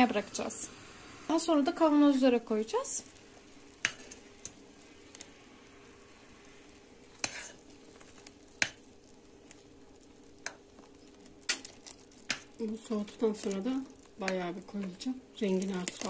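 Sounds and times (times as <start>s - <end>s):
syrup popping: 2.5s - 16.0s.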